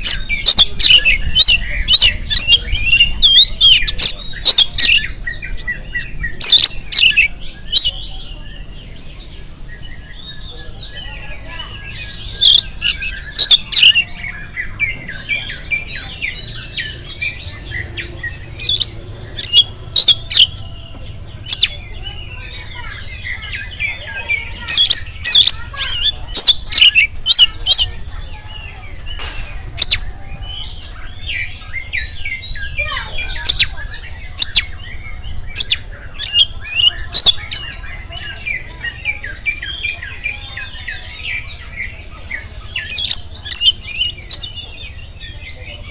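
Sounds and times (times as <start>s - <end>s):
songbird warbling: 0.0s - 45.9s.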